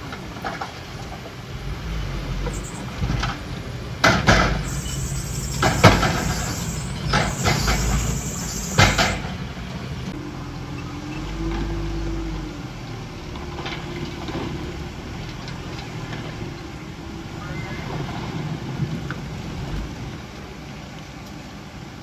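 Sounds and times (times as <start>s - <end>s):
diesel earthmoving machine running: 0.0s - 21.3s
sharp metal clanks: 4.0s - 9.4s
faint whine: 4.5s - 9.7s.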